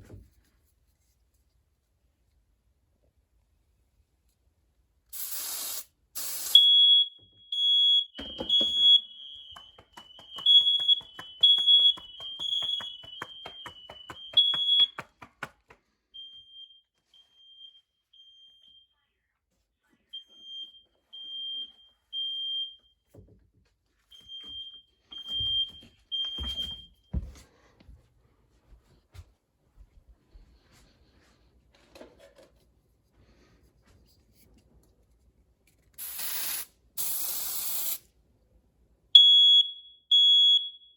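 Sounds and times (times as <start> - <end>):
aerosol spray hissing: 5.1 - 6.6, 36.0 - 38.0
smoke alarm beeping: 5.2 - 15.0, 16.2 - 19.0, 20.1 - 23.1, 24.1 - 27.3, 39.2 - 40.9
second alarm beeping: 6.4 - 15.0, 20.2 - 23.0, 24.2 - 27.2, 39.2 - 40.9.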